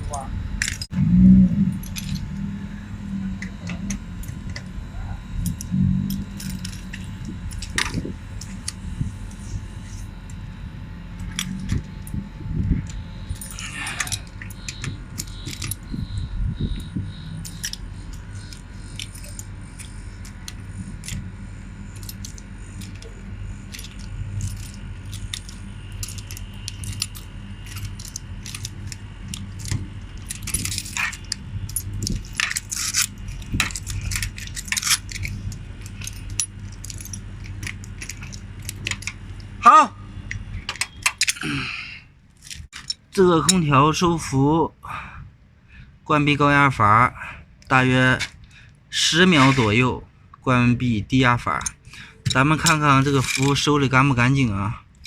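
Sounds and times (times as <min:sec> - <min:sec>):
air conditioner humming: 0:00.0 - 0:55.0
metal tools clinking on valves: 0:13.3 - 0:15.9, 0:17.4 - 0:20.4, 0:23.7 - 0:29.0, 0:29.6 - 0:39.2, 0:40.3 - 0:41.4, 0:51.6 - 0:53.7.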